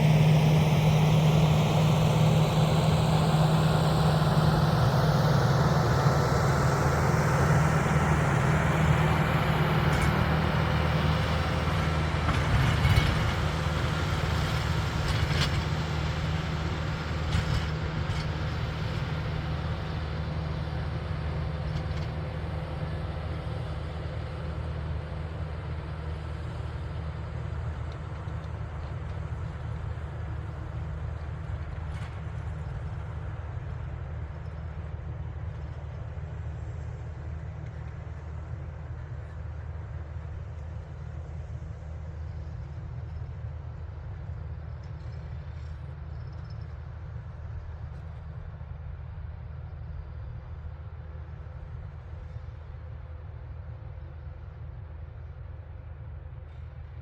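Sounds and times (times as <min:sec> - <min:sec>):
tractor engine humming: 0:00.0 - 0:57.0.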